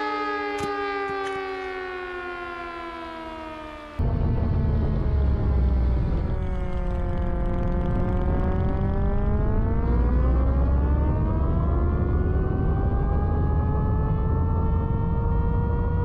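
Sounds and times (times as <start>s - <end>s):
siren wailing: 0.0s - 16.0s
low rumble: 4.0s - 16.0s.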